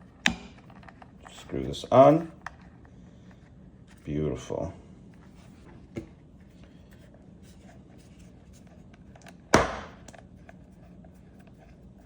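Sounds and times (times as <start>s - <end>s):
sharp knock on a surface: 9.6s - 10.0s.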